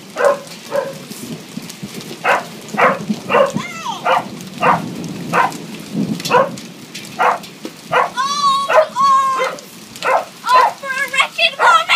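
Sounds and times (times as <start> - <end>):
rain falling: 0.0 - 11.9
small dog barking: 0.2 - 1.1, 2.2 - 5.6, 6.3 - 6.6, 7.2 - 10.8, 11.6 - 11.9.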